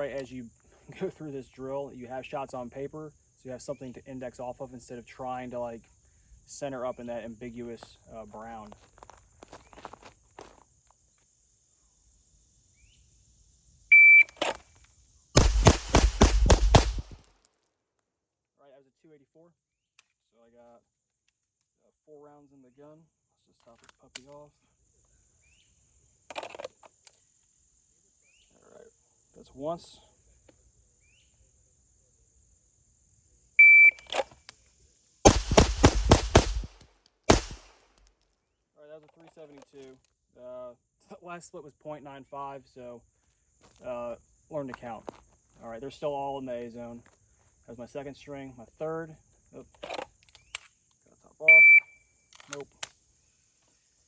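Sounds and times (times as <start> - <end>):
shot timer beep: 13.9 - 14.4, 33.6 - 34.1, 51.5 - 51.9
pistol shots: 15.4 - 17.2, 35.3 - 37.8.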